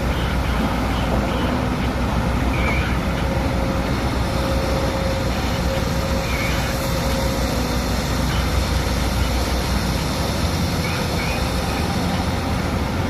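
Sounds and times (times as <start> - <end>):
heavy diesel machinery running: 0.0 - 13.0
steady machine whine: 0.0 - 13.0.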